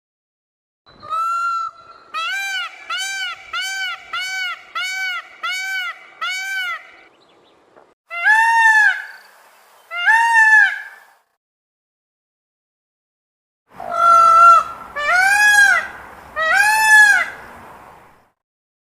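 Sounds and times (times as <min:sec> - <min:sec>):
peacock calling: 0:00.9 - 0:11.2, 0:13.8 - 0:17.6.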